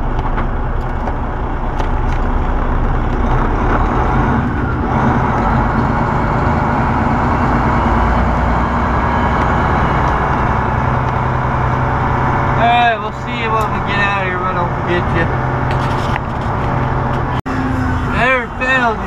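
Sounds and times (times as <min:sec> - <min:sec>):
road and cab noise: 0:00.0 - 0:19.0
truck diesel engine running: 0:00.0 - 0:19.0.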